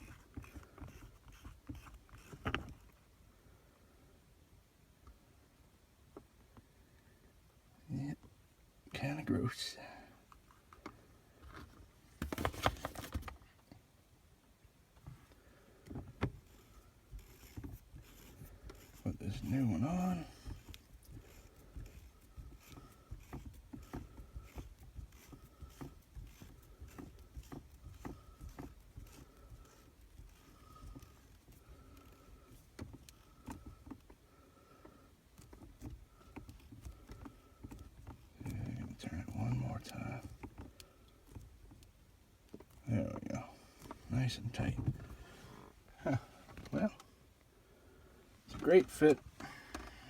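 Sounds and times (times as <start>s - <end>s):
shift knob clicking and rubbing: 0.0s - 3.0s, 15.9s - 47.0s.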